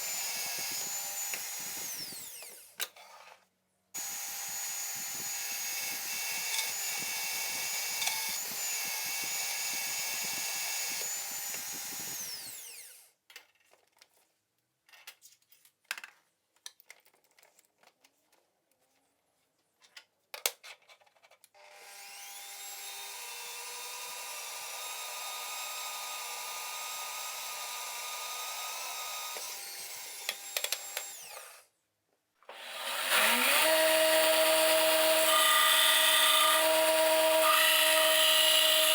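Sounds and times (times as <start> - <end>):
electric power tool running: 0.0 - 2.7, 4.0 - 13.1, 21.6 - 31.6, 32.5 - 38.9
louder power tool: 0.0 - 2.7, 4.0 - 13.1, 21.6 - 31.6, 32.5 - 38.9.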